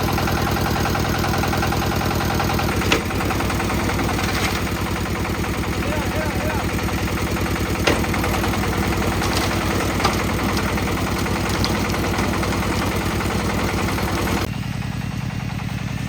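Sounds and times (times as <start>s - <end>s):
high rattle: 0.0s - 14.5s
concrete mixer engine running: 0.0s - 16.0s
sharp clicks and knocks: 0.1s - 5.8s, 6.6s - 14.5s.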